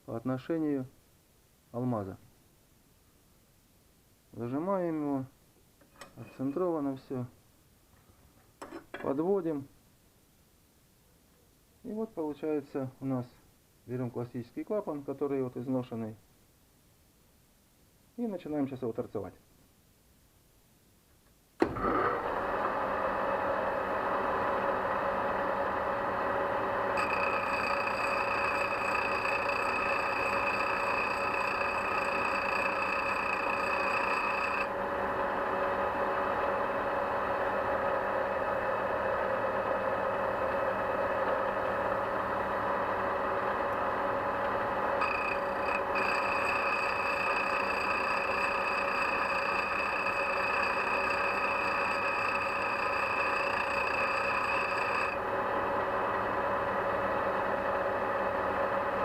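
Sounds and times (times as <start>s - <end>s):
grinding machine hum: 21.7s - 59.0s
high whine: 27.0s - 34.8s, 44.8s - 55.3s.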